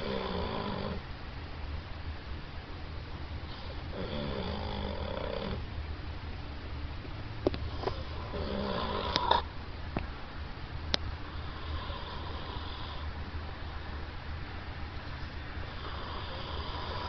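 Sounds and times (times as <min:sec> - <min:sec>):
man snoring: 0:00.0 - 0:01.0, 0:03.5 - 0:05.6, 0:07.9 - 0:09.4, 0:11.3 - 0:13.1, 0:15.7 - 0:17.0
steady low hum: 0:00.0 - 0:17.0.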